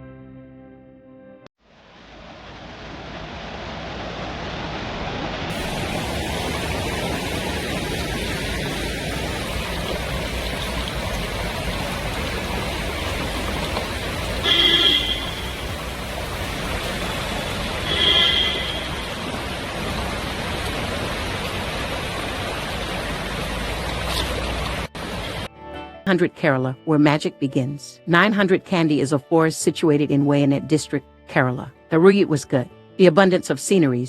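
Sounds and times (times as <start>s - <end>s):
steady rushing noise: 1.7s - 25.5s.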